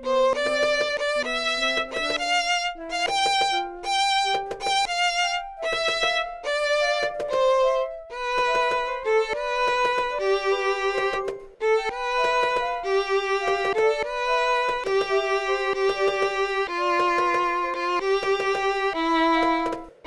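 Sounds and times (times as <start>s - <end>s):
violin melody: 0.0s - 20.0s.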